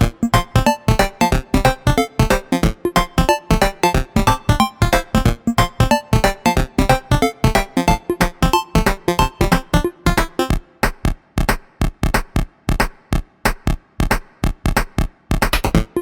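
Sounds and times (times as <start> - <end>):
synthesizer notes: 0.0 - 10.7
drum-machine beat: 0.0 - 16.0.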